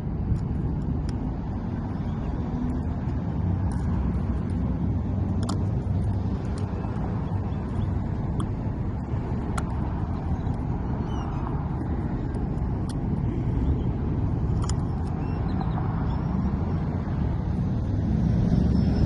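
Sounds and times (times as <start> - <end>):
road traffic rumble: 0.0 - 19.0
faint sharp clicks: 5.3 - 7.1, 9.4 - 10.6.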